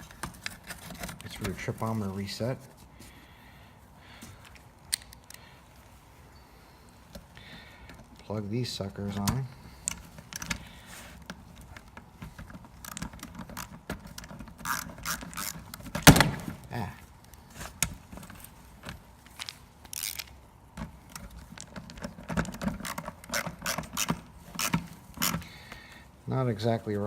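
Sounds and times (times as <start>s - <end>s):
small parts clicking and rattling: 7.1s - 25.8s.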